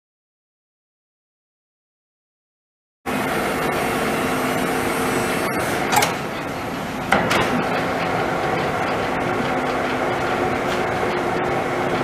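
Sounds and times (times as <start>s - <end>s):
lathe running with hum and whine: 3.1s - 12.0s.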